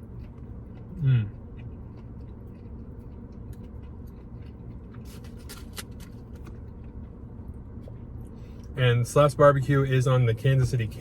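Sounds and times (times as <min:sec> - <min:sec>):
soft eating clicks and rustles: 0:00.0 - 0:08.8
steady low hum: 0:00.0 - 0:11.0.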